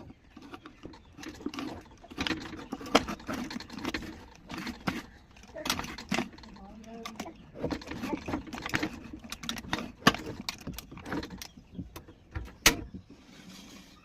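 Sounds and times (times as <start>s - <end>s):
clicks and knocks of handled objects: 0.0s - 13.2s.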